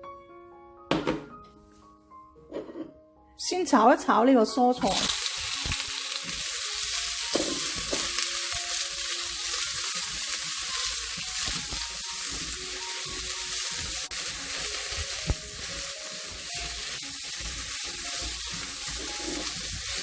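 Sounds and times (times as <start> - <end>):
vegetables sizzling in a wok: 4.8 - 20.0.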